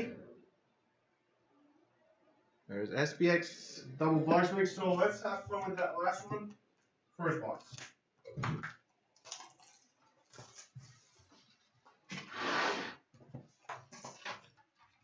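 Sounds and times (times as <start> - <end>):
wrapper tearing: 9.2 - 10.8
packaging crinkling and rustling: 9.2 - 11.9.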